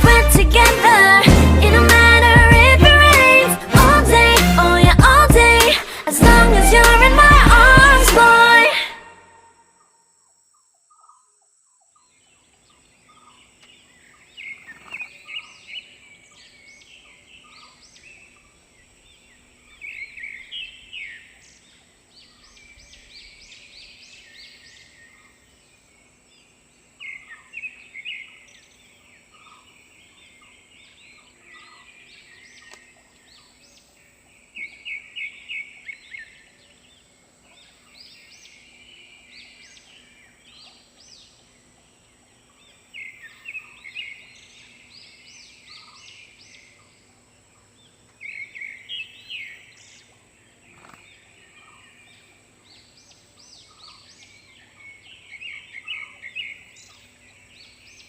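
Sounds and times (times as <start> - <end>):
birds chirping: 12.0 - 58.0.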